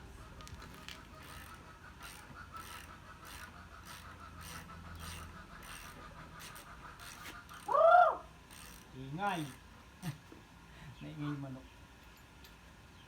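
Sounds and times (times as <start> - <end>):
ratchet wrench clicking: 0.7 - 7.7, 8.5 - 9.6.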